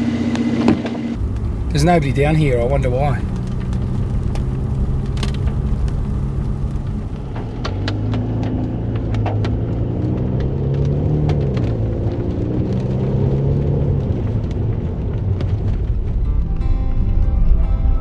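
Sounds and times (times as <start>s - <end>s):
tyres on road: 1.1s - 16.2s
car engine rumble: 1.1s - 18.0s
sharp clicks and ticks: 1.2s - 8.2s.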